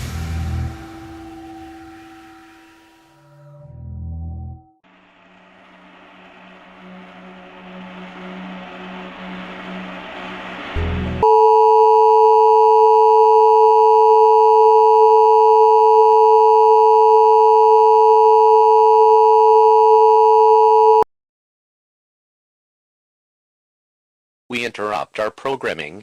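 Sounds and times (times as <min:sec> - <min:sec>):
two-tone electronic alert tone: 0:11.2 - 0:21.0.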